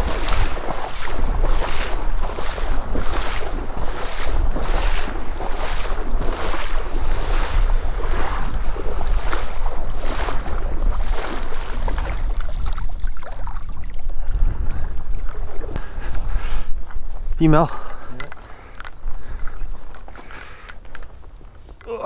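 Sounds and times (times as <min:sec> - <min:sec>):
water swishing: 0:00.0 - 0:16.8
wind rumbling on microphone: 0:00.0 - 0:21.8.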